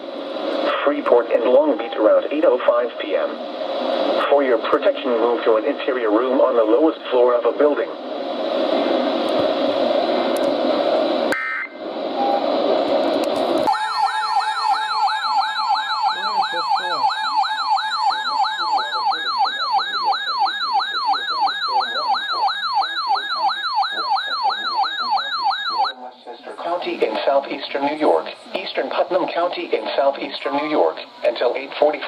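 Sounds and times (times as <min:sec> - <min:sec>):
harsh static-like data noise: 0:00.0 - 0:32.0
warbling siren-like alert tone: 0:13.7 - 0:26.0.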